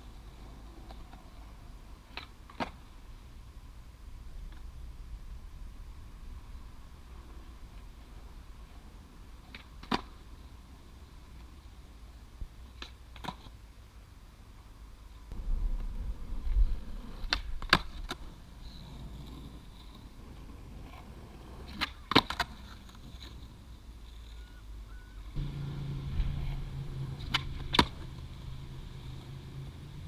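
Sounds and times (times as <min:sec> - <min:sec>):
skateboard wheels rolling: 0:00.0 - 0:13.9, 0:14.5 - 0:30.0
skateboard popping and landing: 0:02.1 - 0:02.9, 0:09.4 - 0:10.2, 0:16.4 - 0:23.6, 0:26.3 - 0:28.2
steady low hum: 0:25.2 - 0:30.0.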